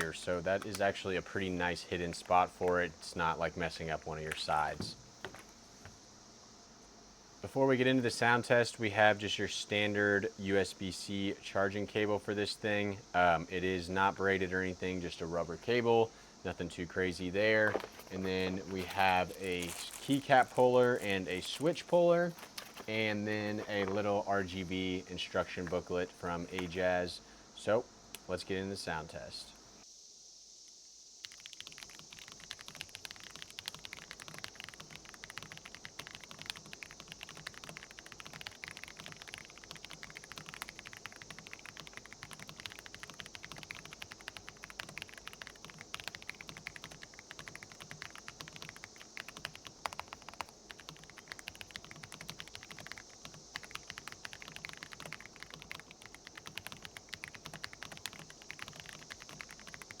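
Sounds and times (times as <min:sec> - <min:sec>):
mechanical keyboard typing: 0:31.2 - 1:00.0.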